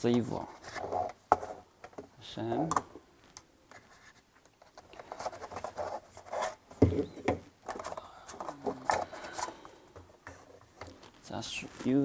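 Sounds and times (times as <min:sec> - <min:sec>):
packaging rustling and scraping: 0:03.8 - 0:12.0.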